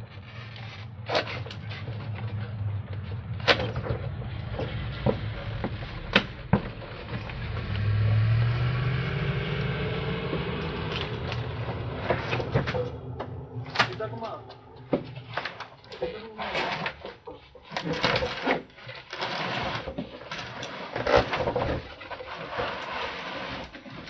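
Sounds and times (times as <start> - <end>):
low rumble: 0.0 - 17.4
faint rising creak: 0.0 - 24.0.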